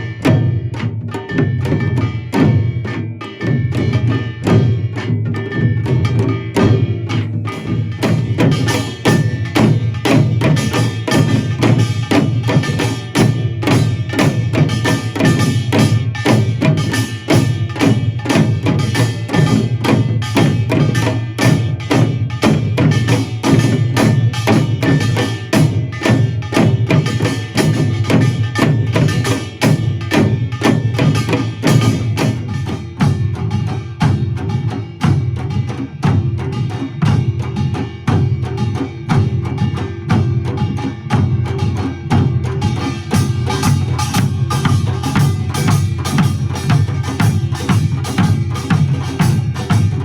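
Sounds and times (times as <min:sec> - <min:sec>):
drums: 0:00.0 - 0:50.0.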